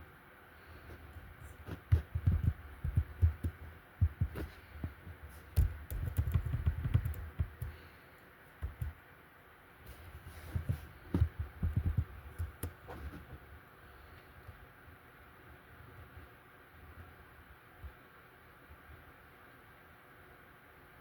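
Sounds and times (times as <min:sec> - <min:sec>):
handling thumps and bumps: 0:01.6 - 0:07.7, 0:10.4 - 0:13.5
sharp clicks: 0:05.5 - 0:07.8.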